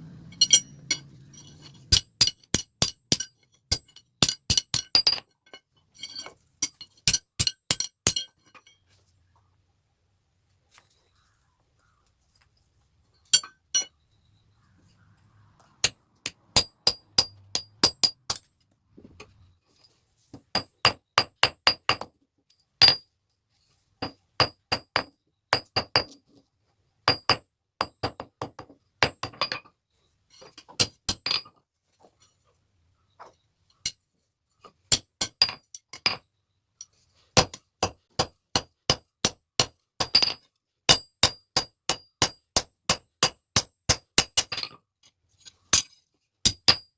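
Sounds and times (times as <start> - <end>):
hammer striking metal on anvil: 0.2 - 5.2.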